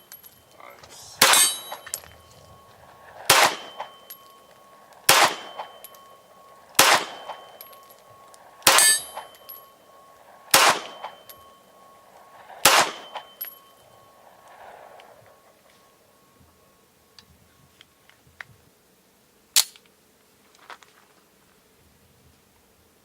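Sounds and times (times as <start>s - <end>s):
pistol shots: 1.2s - 2.0s, 3.0s - 4.3s, 5.0s - 6.1s, 6.7s - 7.9s, 8.6s - 9.6s, 10.5s - 11.4s, 12.6s - 13.3s.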